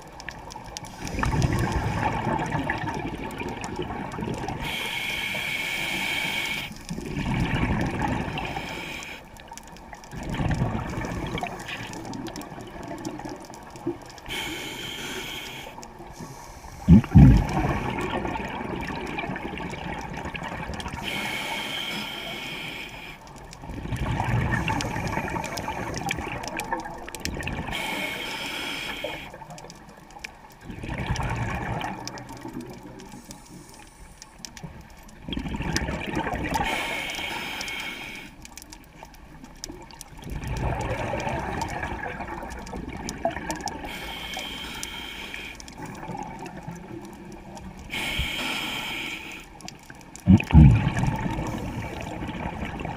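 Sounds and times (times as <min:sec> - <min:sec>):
gurgle of exhaled bubbles: 0:00.0 - 0:04.8, 0:06.9 - 0:08.9, 0:10.0 - 0:14.2, 0:16.8 - 0:21.1, 0:23.6 - 0:27.9, 0:30.6 - 0:33.2, 0:35.1 - 0:36.9, 0:39.5 - 0:44.1, 0:45.8 - 0:48.0, 0:50.1 - 0:52.9
regulator inhale hiss: 0:04.6 - 0:06.9, 0:08.4 - 0:09.3, 0:14.2 - 0:17.1, 0:21.0 - 0:23.3, 0:27.7 - 0:29.4, 0:33.1 - 0:34.3, 0:36.6 - 0:38.4, 0:43.8 - 0:45.9, 0:47.9 - 0:49.6.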